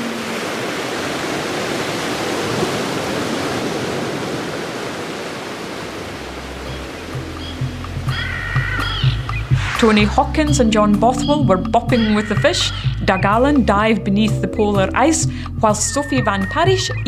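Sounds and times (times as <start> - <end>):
rushing water noise: 0.0 - 11.3
low sustained musical notes: 6.0 - 17.0.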